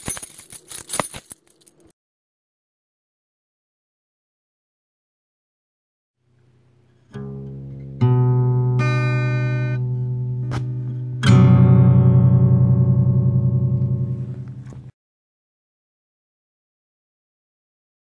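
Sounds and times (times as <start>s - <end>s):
plucked string notes: 7.1s - 14.9s.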